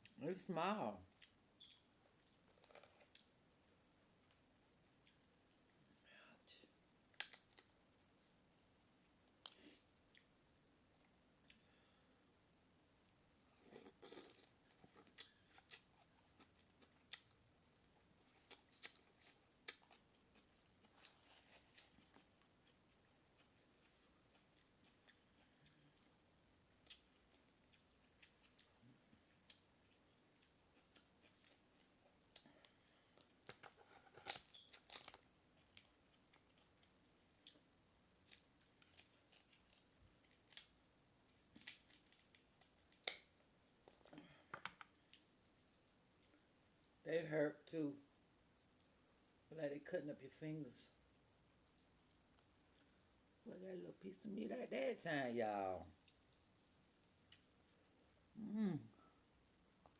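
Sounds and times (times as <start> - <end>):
chewing: 1.1 - 3.4, 13.6 - 45.3
crab shells cracking: 7.1 - 7.7.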